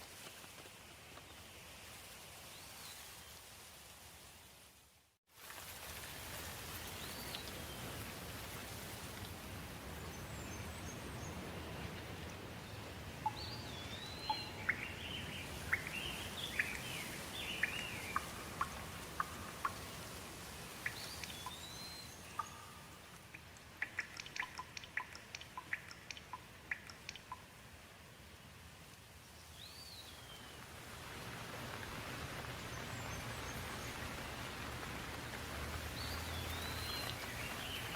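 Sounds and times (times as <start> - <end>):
steady rain falling: 0.0 - 37.9
birds chirping: 12.6 - 20.0, 20.7 - 27.4, 36.0 - 37.9
raindrops ticking: 13.2 - 27.6, 31.2 - 37.9.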